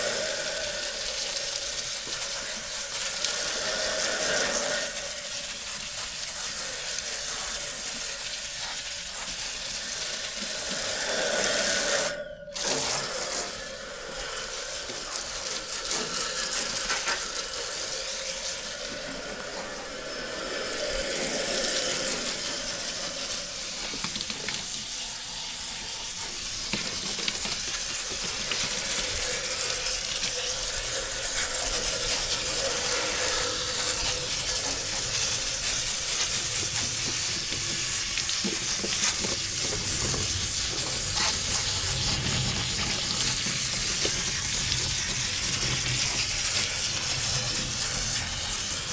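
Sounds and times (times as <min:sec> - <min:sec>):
faint steady hum: 0:00.0 - 0:26.6
hissing rush of spraying water: 0:00.0 - 0:48.9.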